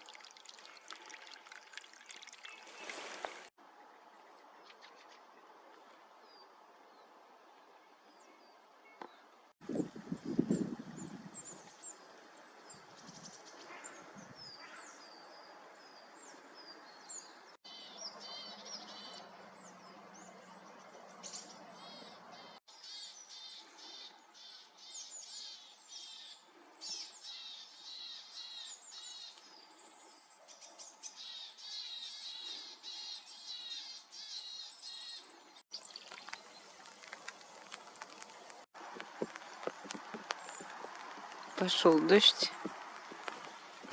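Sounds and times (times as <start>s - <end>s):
small birds chirping: 8.1s - 43.9s
light rain falling: 35.8s - 43.9s.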